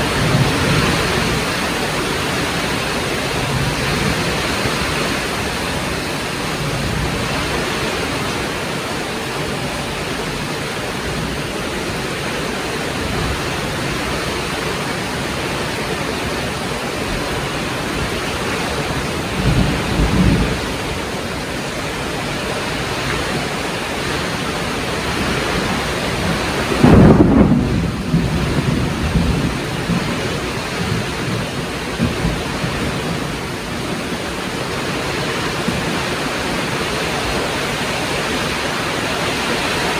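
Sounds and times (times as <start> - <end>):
rolling thunder: 0.0 - 8.6, 17.1 - 21.1, 25.0 - 34.5
heavy rain falling: 0.0 - 39.9.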